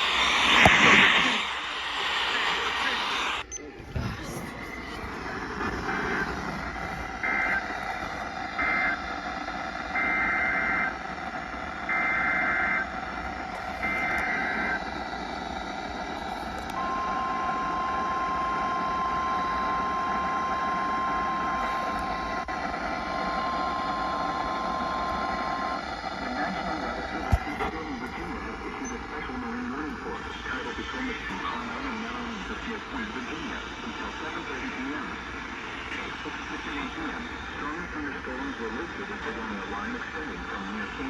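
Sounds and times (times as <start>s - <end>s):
radio hiss: 0.0s - 41.0s
single-pitch warning alarm tone: 9.9s - 11.0s, 11.8s - 12.9s.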